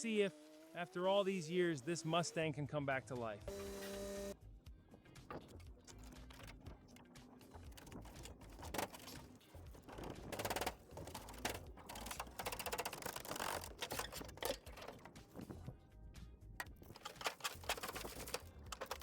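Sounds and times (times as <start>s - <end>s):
mechanical clicking and clattering: 5.2s - 15.6s, 16.6s - 19.0s.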